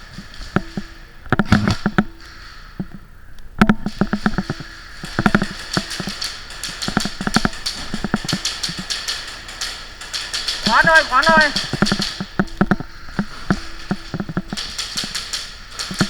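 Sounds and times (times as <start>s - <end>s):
airsoft guns firing bursts: 3.8s - 16.0s.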